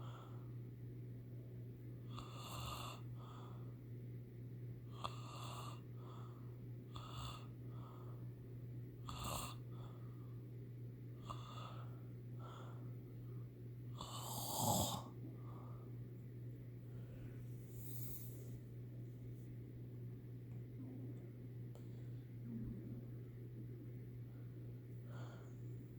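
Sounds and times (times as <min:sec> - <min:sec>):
steady low hum: 0:00.0 - 0:25.9
person snoring: 0:14.0 - 0:15.2.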